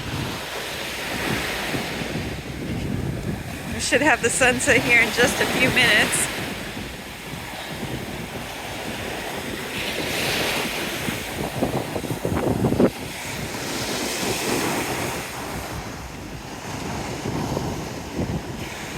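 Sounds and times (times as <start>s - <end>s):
surf washing onto beach: 0.0s - 18.9s
wind buffeting microphone: 0.0s - 18.9s.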